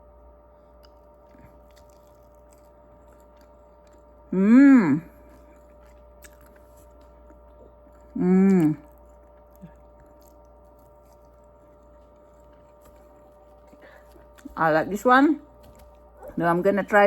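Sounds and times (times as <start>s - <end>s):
faint hum: 0.0s - 17.0s
quiet chewing: 0.5s - 4.3s, 5.0s - 16.4s.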